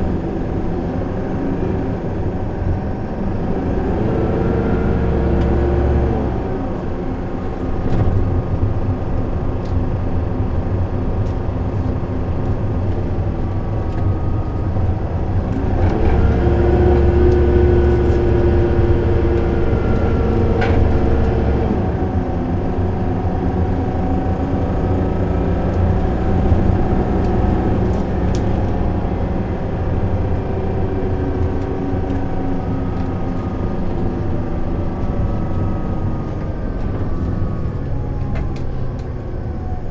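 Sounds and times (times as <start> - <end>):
bus diesel engine running: 0.0 - 39.9.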